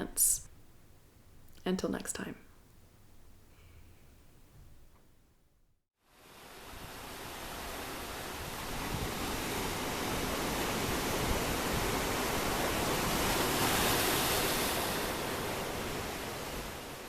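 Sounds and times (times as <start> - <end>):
steady rushing noise: 6.2 - 17.0.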